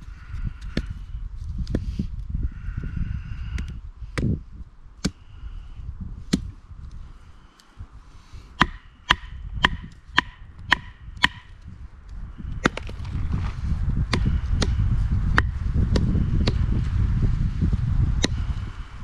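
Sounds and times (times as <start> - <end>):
axe chopping firewood: 5.0 - 5.2, 6.3 - 6.6, 8.6 - 11.6, 12.6 - 13.1, 14.1 - 14.8, 15.4 - 16.6, 18.2 - 18.4.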